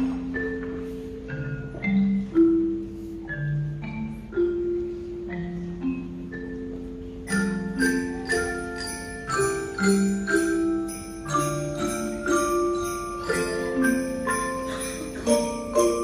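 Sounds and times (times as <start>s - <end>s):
glockenspiel melody: 0.0s - 16.0s
sleigh bells shaking: 7.3s - 16.0s.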